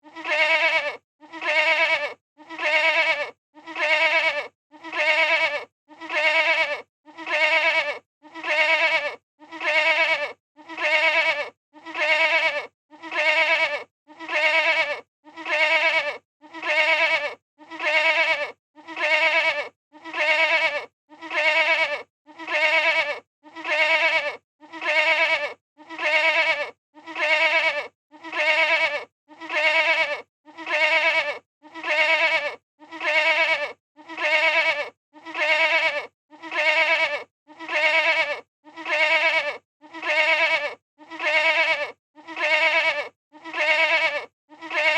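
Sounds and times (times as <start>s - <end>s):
goat bleating: 0.0s - 44.9s.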